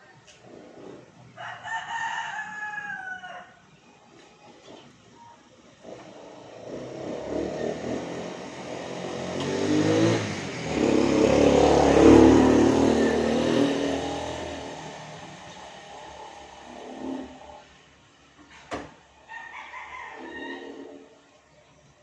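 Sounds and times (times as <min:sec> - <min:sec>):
motor vehicle engine: 0:04.6 - 0:19.2.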